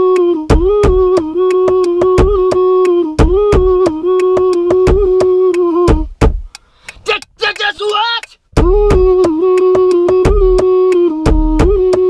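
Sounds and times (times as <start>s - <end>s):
fast steady drum beat: 0.5s - 1.2s, 1.8s - 2.6s, 3.2s - 5.3s, 5.9s - 10.6s, 11.3s - 12.0s.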